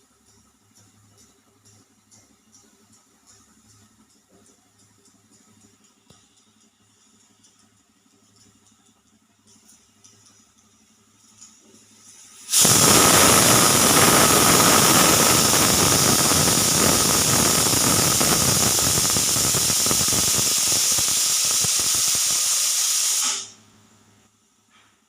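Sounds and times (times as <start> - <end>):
pressure cooker steam hissing: 12.0 - 23.6.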